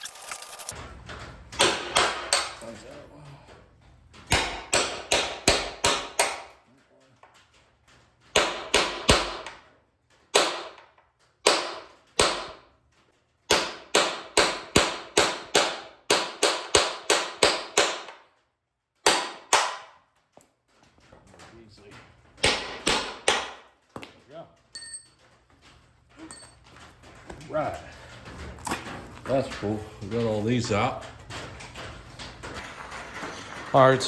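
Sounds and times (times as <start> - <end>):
hammer striking metal: 1.6 - 2.6, 4.3 - 6.5, 8.4 - 9.6, 11.4 - 12.6, 13.5 - 18.2, 19.0 - 19.9, 22.4 - 23.6.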